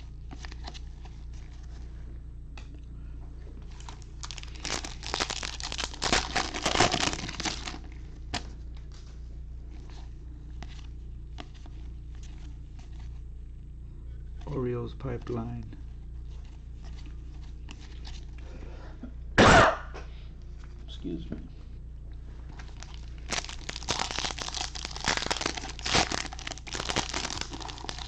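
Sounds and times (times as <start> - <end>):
wrapper tearing and crinkling: 3.7 - 8.4, 22.6 - 28.0
cards clicking and rustling: 22.5 - 28.0.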